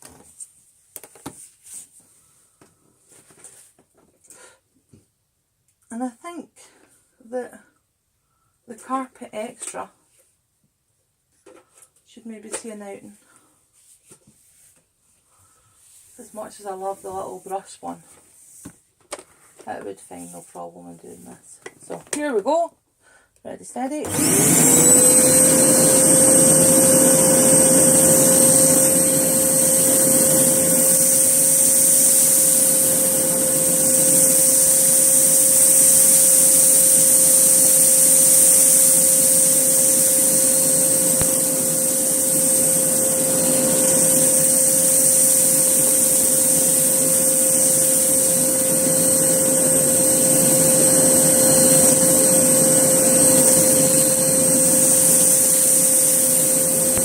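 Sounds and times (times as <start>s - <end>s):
vacuum cleaner running: 24.0s - 57.0s.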